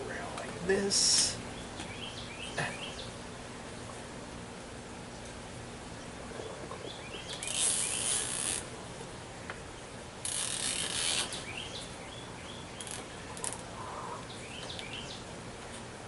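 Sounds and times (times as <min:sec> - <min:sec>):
small birds chirping: 0:00.0 - 0:04.4, 0:05.1 - 0:15.9
zip tie ratcheting: 0:07.4 - 0:08.7, 0:10.2 - 0:11.4.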